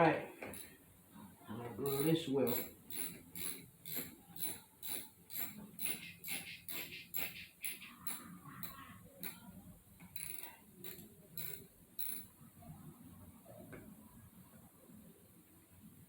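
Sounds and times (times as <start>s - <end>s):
hand wrench clicking: 0.4s - 0.7s, 1.9s - 12.3s.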